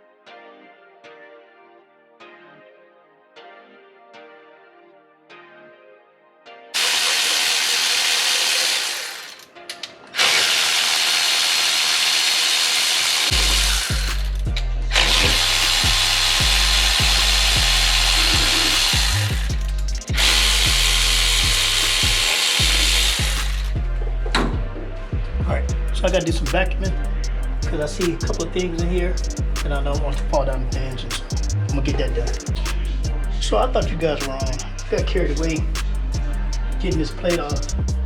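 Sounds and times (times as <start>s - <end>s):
handheld power tool running: 6.8s - 23.8s
music with heavy bass beat: 13.3s - 38.0s.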